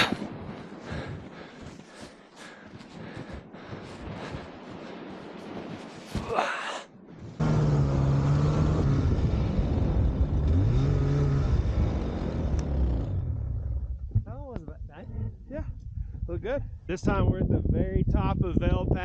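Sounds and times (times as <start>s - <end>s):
snowmobile engine revving: 7.4s - 13.8s.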